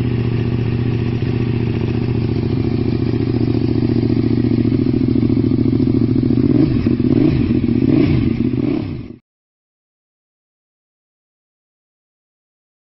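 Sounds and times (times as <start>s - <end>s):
motorcycle engine idling and revving: 0.0s - 9.2s.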